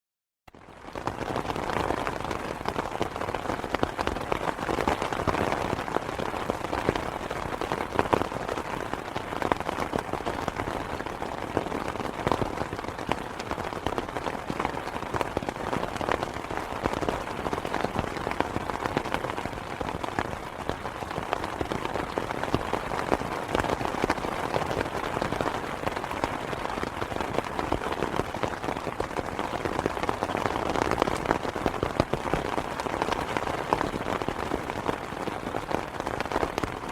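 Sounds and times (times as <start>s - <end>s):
rain pattering on an umbrella: 0.5s - 36.9s.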